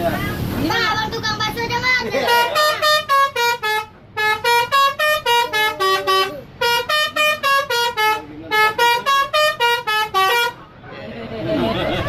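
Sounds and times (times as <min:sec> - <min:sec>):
bus musical horn tune: 0:02.2 - 0:10.6.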